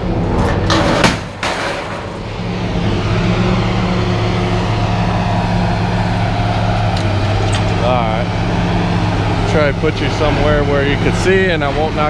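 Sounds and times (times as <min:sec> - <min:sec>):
engine running: 0:00.0 - 0:12.0
scrap metal clanking: 0:00.3 - 0:02.2.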